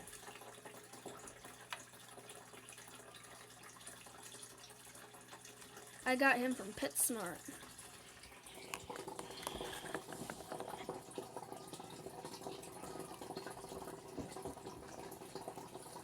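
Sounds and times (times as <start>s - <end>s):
faint steady hum: 0.0s - 16.0s
water bubbling and trickling: 0.0s - 16.0s
water drips: 0.0s - 16.0s.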